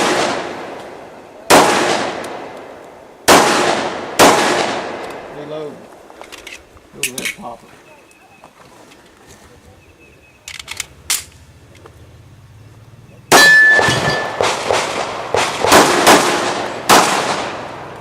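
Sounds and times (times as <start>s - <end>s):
gun handling clicks: 6.1s - 7.4s, 10.4s - 11.9s
steel targets clanging: 13.3s - 14.6s.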